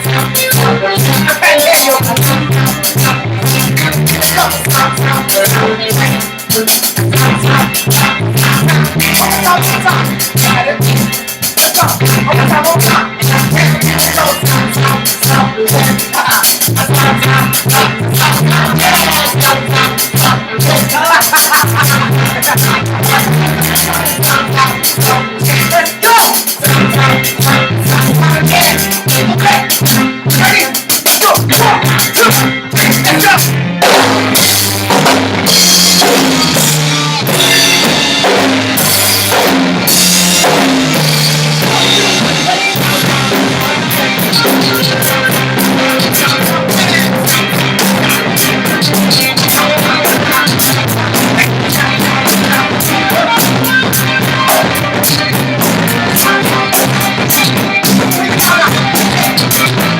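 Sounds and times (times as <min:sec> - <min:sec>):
live band playing: 0:00.0 - 0:59.9
choppy drum hits: 0:33.2 - 0:59.9.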